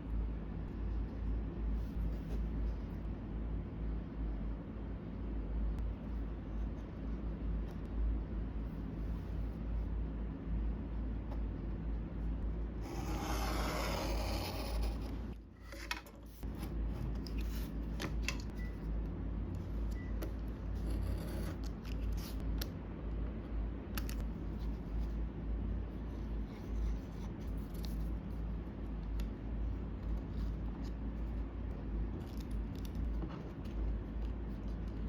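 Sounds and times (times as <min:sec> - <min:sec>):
scratchy cutting stroke: 0:12.8 - 0:15.2.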